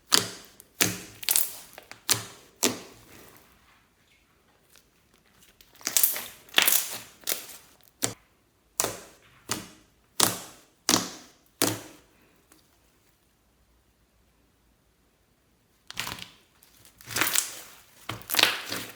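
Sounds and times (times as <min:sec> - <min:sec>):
slime popping and clicking: 0:00.1 - 0:02.8, 0:05.8 - 0:08.2.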